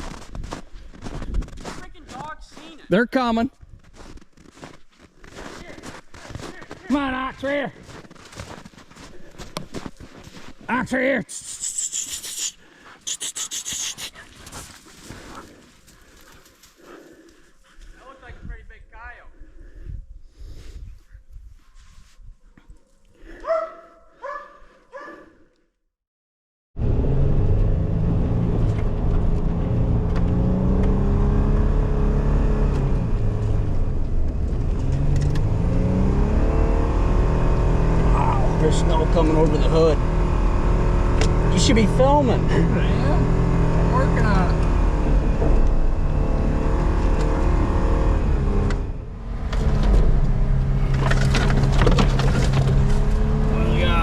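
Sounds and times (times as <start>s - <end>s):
vehicle engine running hard: 26.8s - 54.0s.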